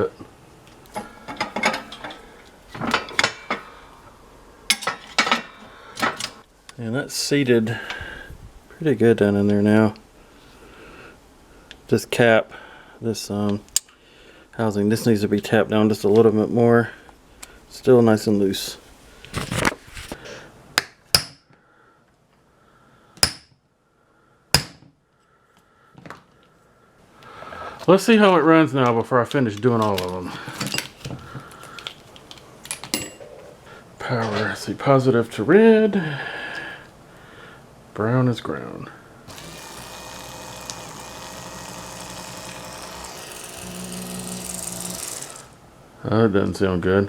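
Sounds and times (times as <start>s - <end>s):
handling noise: 0.7s - 3.8s
electric pump motor running: 39.3s - 45.6s.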